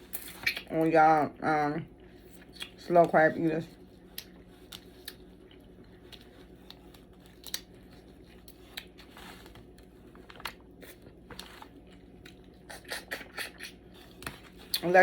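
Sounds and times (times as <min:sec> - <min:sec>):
crab shell cracking: 0:06.1 - 0:07.7.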